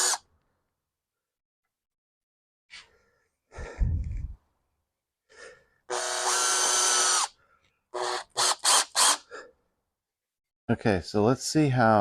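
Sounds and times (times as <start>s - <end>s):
power drill driving a screw: 0.0s - 0.2s, 5.9s - 7.3s, 8.0s - 9.2s.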